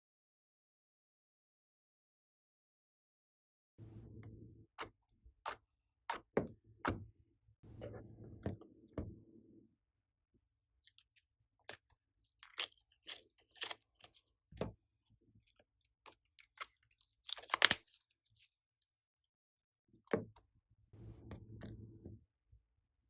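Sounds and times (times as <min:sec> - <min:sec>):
slime crackling and popping: 0:12.3 - 0:14.2, 0:16.4 - 0:18.0.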